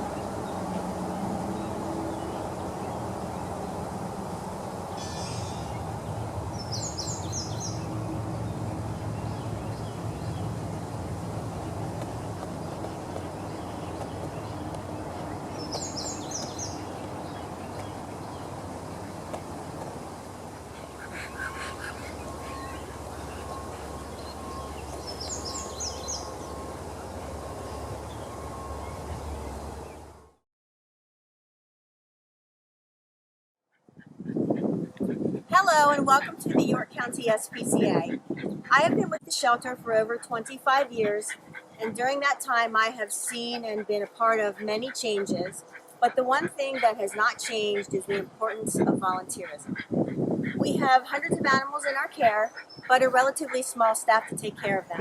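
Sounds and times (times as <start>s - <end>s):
birds calling: 4.7s - 30.1s, 33.9s - 39.2s, 40.3s - 55.0s
high bird chirps: 5.0s - 5.9s, 12.0s - 18.6s.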